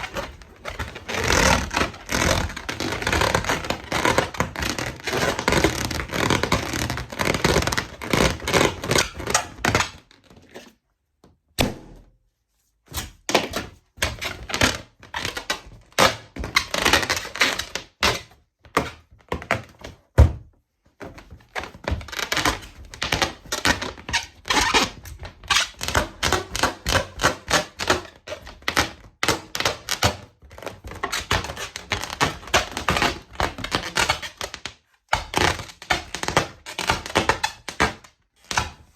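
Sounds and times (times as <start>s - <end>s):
balloons popping: 11.6s - 12.1s.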